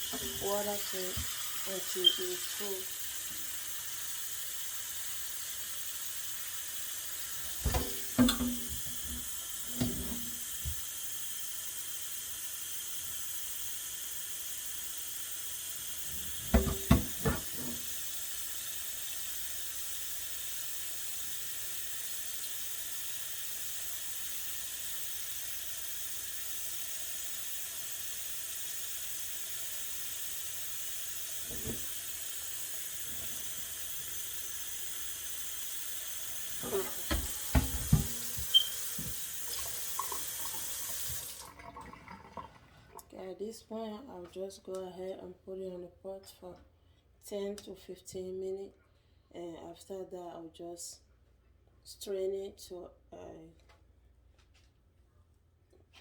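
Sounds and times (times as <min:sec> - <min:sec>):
tap water running into a pot: 0:00.0 - 0:43.1.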